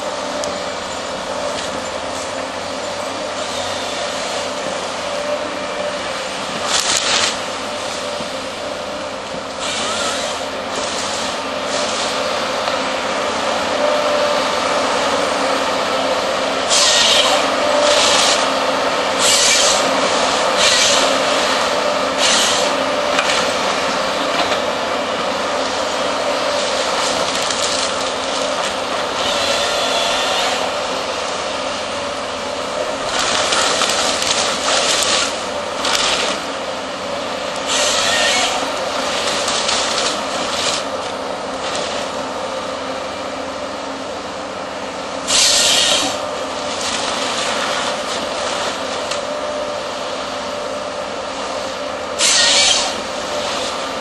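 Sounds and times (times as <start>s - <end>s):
excavator diesel engine running: 0.0s - 54.0s
short high hydraulic hissing bursts: 16.7s - 18.2s, 45.3s - 46.1s, 52.2s - 53.0s.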